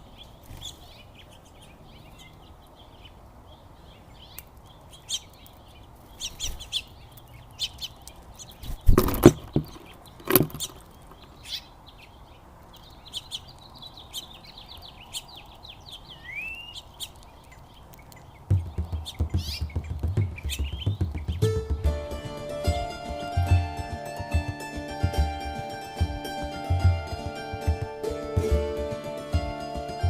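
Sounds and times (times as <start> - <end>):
songbirds chirping: 0.0 - 30.0
sharp rustling bursts: 8.3 - 11.6, 18.4 - 21.8
low rhythmic thumping: 18.5 - 30.0.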